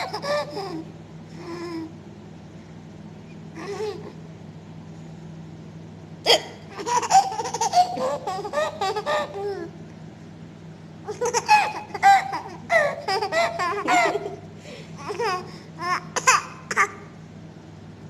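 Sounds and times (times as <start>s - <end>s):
baby laughing: 0.0s - 0.9s, 3.6s - 4.2s, 6.3s - 9.7s, 11.1s - 17.0s.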